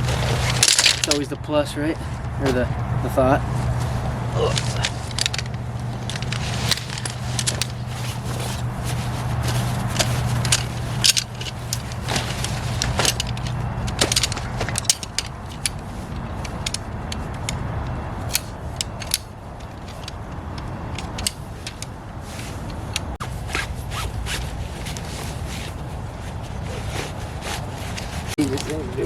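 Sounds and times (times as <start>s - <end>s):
low hum: 0.0s - 29.0s
metal frame clinking and clicking: 0.1s - 1.4s, 4.4s - 23.1s.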